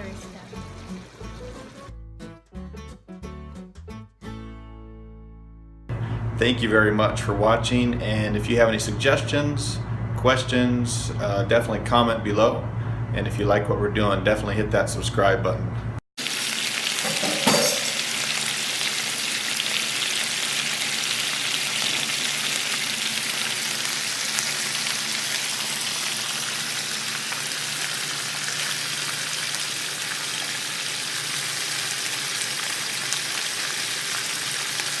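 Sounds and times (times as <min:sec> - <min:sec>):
food sizzling in frying pan: 0:00.0 - 0:01.9, 0:16.2 - 0:35.0
steady low hum: 0:05.9 - 0:16.0.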